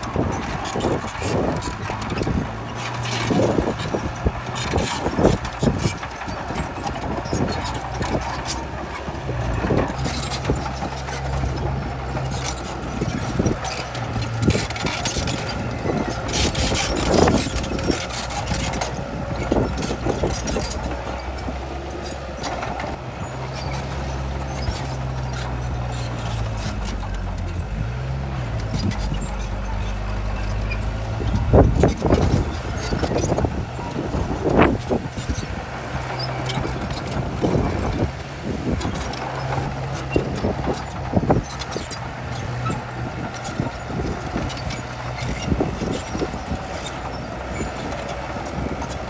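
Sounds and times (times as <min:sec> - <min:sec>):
bulldozer diesel engine running: 0:00.0 - 0:49.0
metal clanks and rattles: 0:00.0 - 0:49.0.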